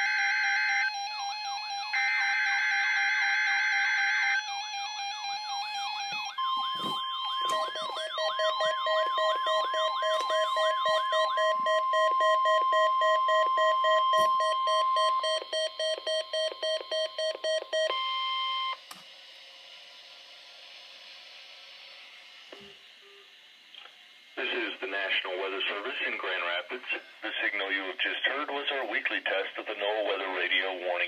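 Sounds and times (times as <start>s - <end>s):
rapid falling alarm sweeps: 0.0s - 18.8s
steady warning alarm tone: 0.0s - 18.9s
pulsing beep: 5.6s - 18.8s.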